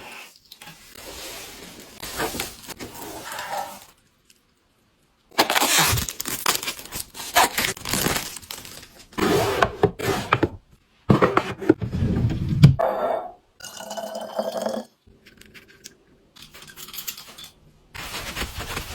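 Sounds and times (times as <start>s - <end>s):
packaging tearing and crinkling: 5.3s - 9.2s.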